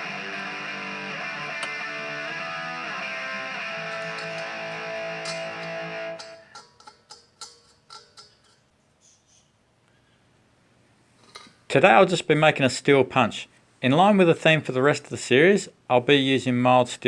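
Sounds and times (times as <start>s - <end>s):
guitar music: 0.0s - 6.8s.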